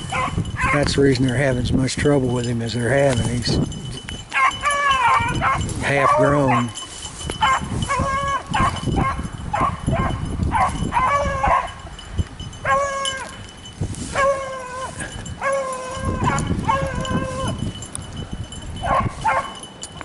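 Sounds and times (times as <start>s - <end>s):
dogs baying and howling: 0.0s - 0.9s, 4.3s - 11.9s, 12.6s - 17.8s, 18.8s - 19.6s.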